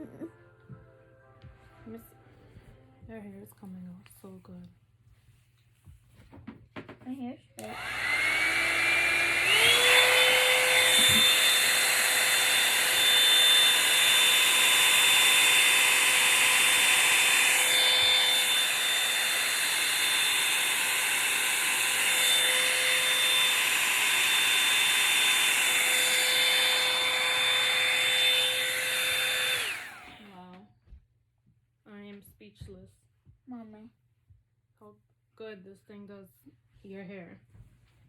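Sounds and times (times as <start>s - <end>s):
hot-air brush motor whine: 7.6s - 30.4s.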